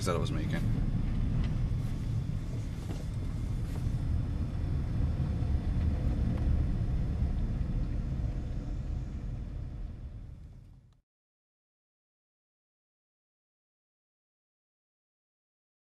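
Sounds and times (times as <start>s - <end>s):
car interior low rumble: 0.0s - 11.0s.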